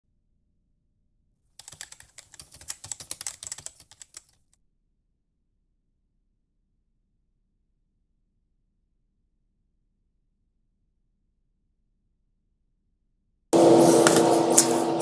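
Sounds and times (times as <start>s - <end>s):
rapid typing on keyboard: 1.6s - 4.3s.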